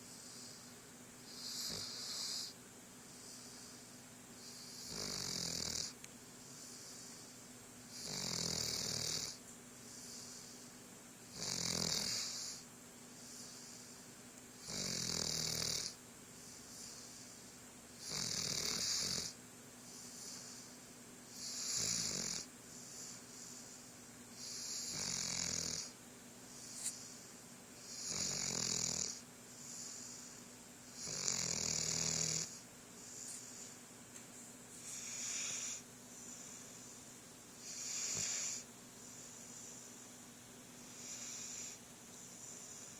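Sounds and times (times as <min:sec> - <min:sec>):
soft breathing: 0:00.0 - 0:05.1, 0:05.9 - 0:08.0, 0:09.3 - 0:10.9, 0:12.2 - 0:14.4, 0:16.3 - 0:17.7, 0:19.8 - 0:21.5, 0:22.6 - 0:25.0, 0:26.4 - 0:28.4, 0:29.4 - 0:31.2, 0:32.4 - 0:42.9
person snoring: 0:04.4 - 0:05.9, 0:07.9 - 0:09.4, 0:11.3 - 0:12.6, 0:14.6 - 0:16.0, 0:18.0 - 0:19.4, 0:21.4 - 0:23.2, 0:27.8 - 0:29.2, 0:31.0 - 0:33.3, 0:37.6 - 0:38.6.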